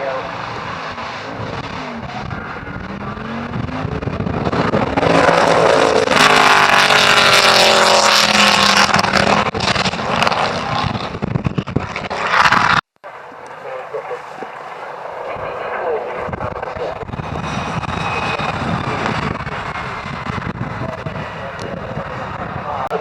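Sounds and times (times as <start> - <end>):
racing car engine passing: 0.0 - 11.2.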